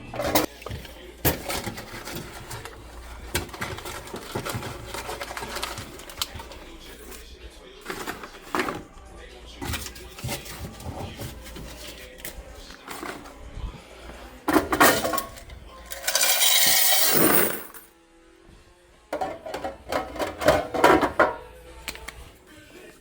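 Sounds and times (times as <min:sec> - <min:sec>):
background music: 0:00.0 - 0:23.0
snack packets handled: 0:00.4 - 0:09.0
coins clinking: 0:14.6 - 0:17.9.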